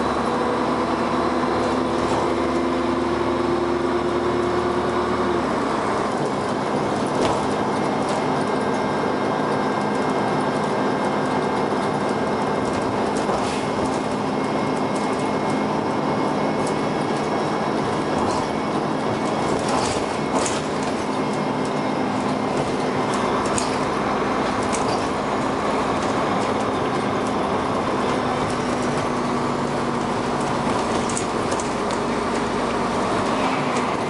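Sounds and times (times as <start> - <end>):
bus engine running: 0.0 - 34.0
bus rattles: 0.0 - 34.0
steady whining tone: 11.0 - 34.0.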